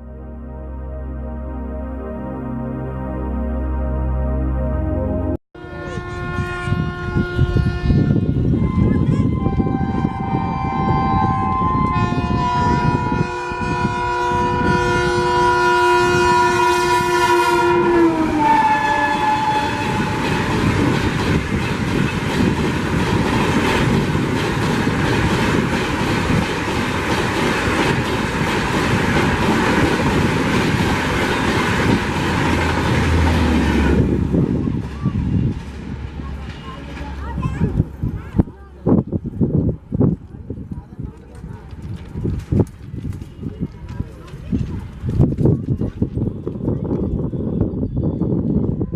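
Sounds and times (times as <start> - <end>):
locomotive horn blaring: 0.0 - 20.8, 31.2 - 35.5
train wheels clacking over rails: 19.7 - 34.2.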